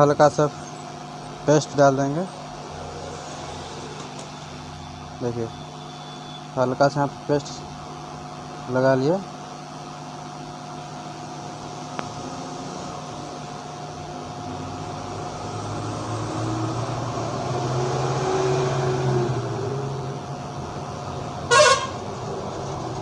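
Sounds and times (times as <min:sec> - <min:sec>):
steady background hum: 0:00.0 - 0:17.7, 0:19.3 - 0:23.0
road vehicle passing: 0:01.4 - 0:04.8, 0:14.4 - 0:23.0
short vehicle horn toot: 0:05.5 - 0:06.5, 0:21.5 - 0:22.0.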